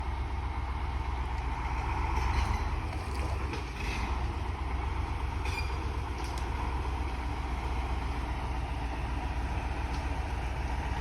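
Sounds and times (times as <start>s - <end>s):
truck diesel engine rumbling: 0.0s - 11.0s
faint squeaks and rattles: 2.1s - 4.2s, 5.3s - 6.4s.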